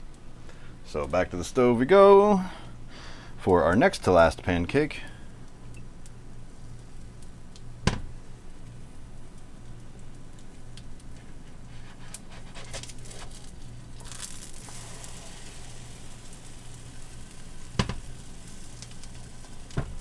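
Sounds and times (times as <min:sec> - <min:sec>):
low steady hum: 0:00.0 - 0:20.0
pancake sizzling in a pan: 0:11.0 - 0:20.0.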